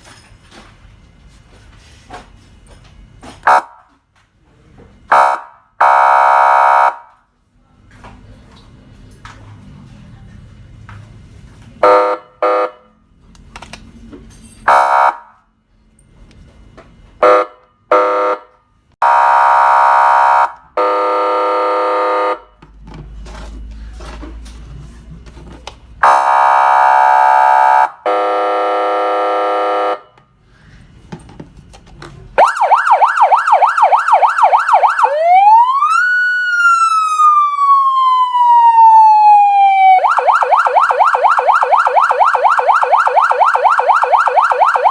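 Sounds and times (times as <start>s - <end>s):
electronic siren horn blasts: 3.4s - 3.9s, 5.1s - 7.2s, 11.8s - 12.9s, 14.7s - 15.4s, 17.2s - 22.6s, 26.0s - 30.2s, 32.4s - 44.9s
long steady siren tones: 5.1s - 7.2s, 14.7s - 15.4s, 17.2s - 22.6s, 26.0s - 30.3s, 32.4s - 44.9s
siren wail: 5.1s - 7.2s, 14.7s - 15.4s, 19.0s - 22.5s, 26.0s - 30.0s, 32.4s - 44.9s
siren yelp warble: 32.4s - 44.9s.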